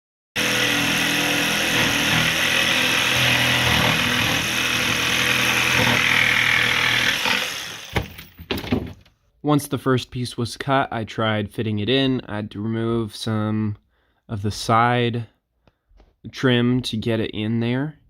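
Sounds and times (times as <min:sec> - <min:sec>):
power saw cutting plywood: 0:00.4 - 0:08.4.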